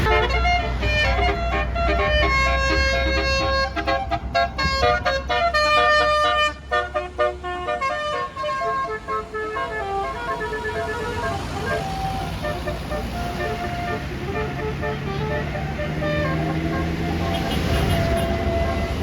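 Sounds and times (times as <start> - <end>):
bus horn playing a tune: 0.0 - 19.0
low engine rumble: 0.0 - 19.0.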